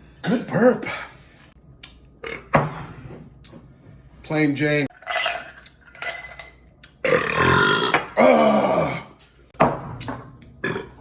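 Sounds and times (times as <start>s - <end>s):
man belching loudly: 7.0s - 9.1s.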